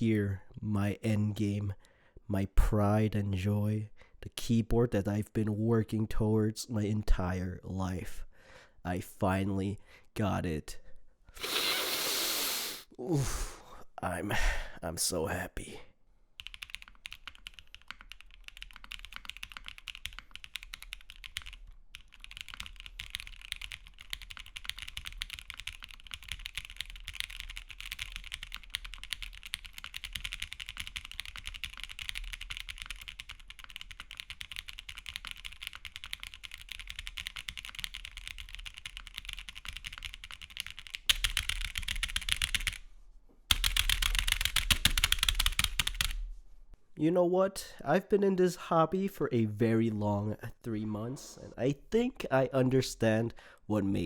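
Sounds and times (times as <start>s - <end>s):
typing on mechanical keyboard: 16.4s - 42.8s, 43.5s - 46.2s.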